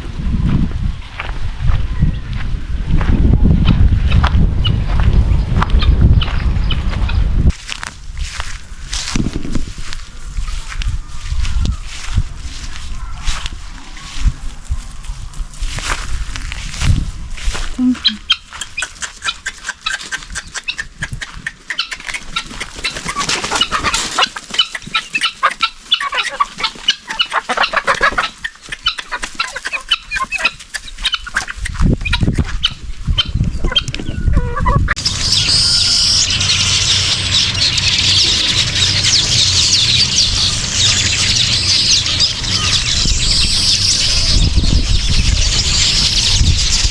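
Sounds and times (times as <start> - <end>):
low rumble: 0.0 - 18.2
guinea fowl calling: 17.8 - 44.6.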